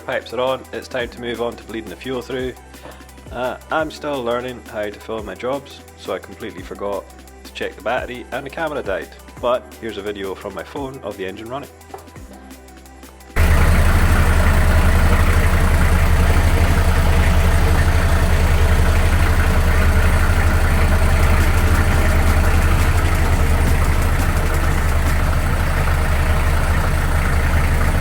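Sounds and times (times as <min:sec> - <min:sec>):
diesel engine running: 0:13.4 - 0:28.0.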